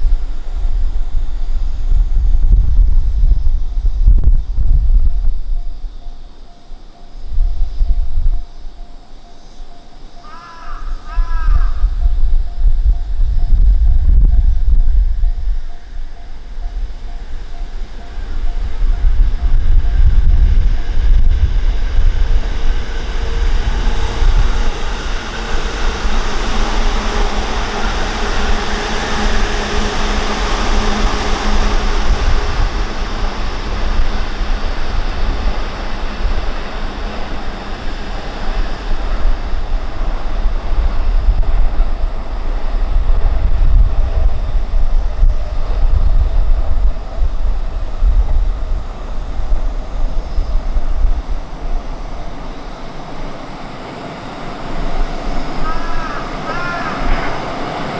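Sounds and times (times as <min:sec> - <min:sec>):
faint steady whine: 0:00.0 - 0:57.9
train passing rumble: 0:00.0 - 0:57.9
wind buffeting microphone: 0:00.0 - 0:57.9.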